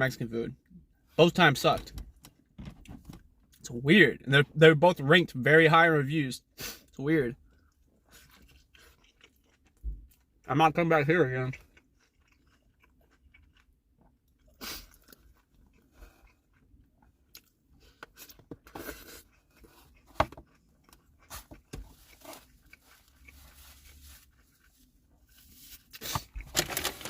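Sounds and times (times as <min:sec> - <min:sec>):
chewing and crunching: 0:07.4 - 0:27.0.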